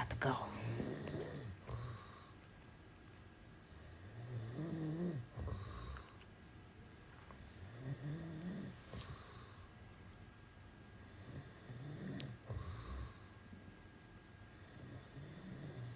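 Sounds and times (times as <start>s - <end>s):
man snoring: 0.7s - 2.3s, 3.7s - 6.1s, 7.5s - 9.6s, 11.0s - 13.2s, 14.5s - 15.9s.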